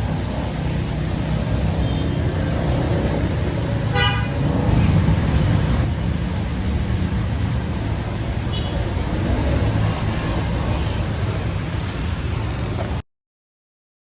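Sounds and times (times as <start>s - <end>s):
heavy rain: 0.0s - 13.0s
road traffic rumble: 0.0s - 13.0s
car horn toot: 3.9s - 4.4s.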